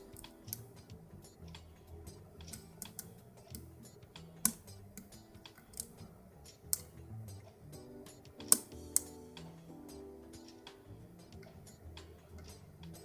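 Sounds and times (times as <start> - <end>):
lock pick clicking in lock: 8.4 - 9.2.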